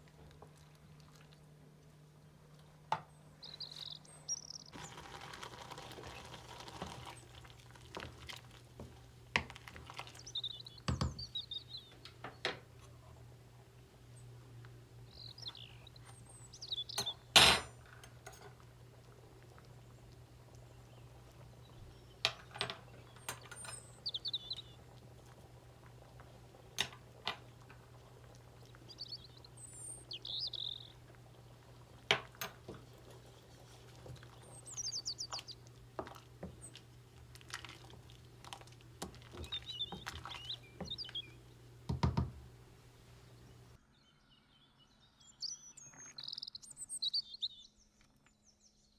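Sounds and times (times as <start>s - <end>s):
small birds chirping: 1.2s - 48.9s
utensils clinking against pots: 16.9s - 18.6s, 22.2s - 24.6s, 32.0s - 33.2s.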